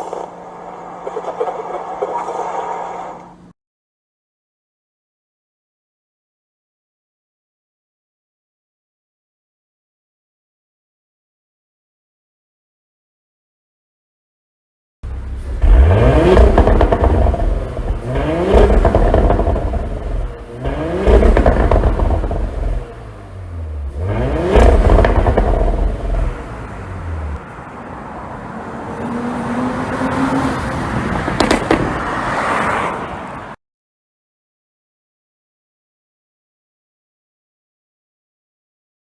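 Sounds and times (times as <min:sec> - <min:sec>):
car engine revving: 0:15.0 - 0:27.4, 0:28.7 - 0:32.9
exhaust pops and crackles: 0:15.1 - 0:27.4, 0:31.4 - 0:32.1.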